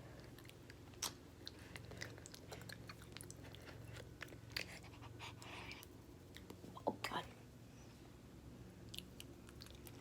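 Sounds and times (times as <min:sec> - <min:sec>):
person chewing with crunching: 0:00.0 - 0:06.7, 0:08.8 - 0:10.0.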